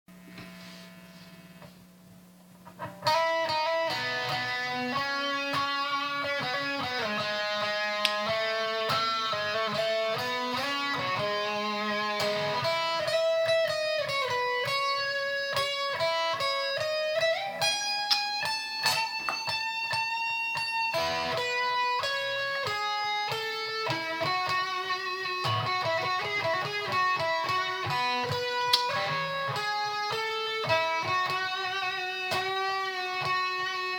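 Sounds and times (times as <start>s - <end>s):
faint hum: 0.1s - 3.0s
electric guitar playing: 2.6s - 33.9s.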